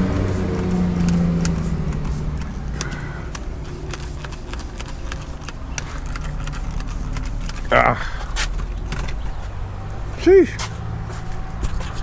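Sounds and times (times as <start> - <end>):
trigger sprayer squirts: 0.0 - 9.2
low vehicle engine drone: 0.0 - 12.0.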